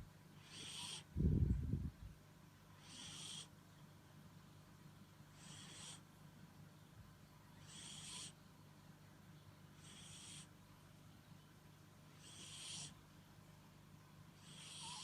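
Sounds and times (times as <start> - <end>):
dog snoring: 0.4 - 1.1, 2.8 - 3.5, 5.4 - 6.1, 7.6 - 8.4, 9.8 - 10.5, 12.1 - 13.0, 14.4 - 15.0.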